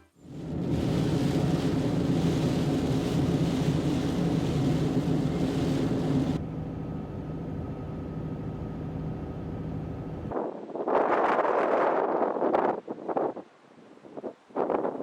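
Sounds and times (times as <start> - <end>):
low vehicle engine drone: 0.0 - 10.4
wind gusting against microphone: 0.2 - 6.4, 10.3 - 15.0.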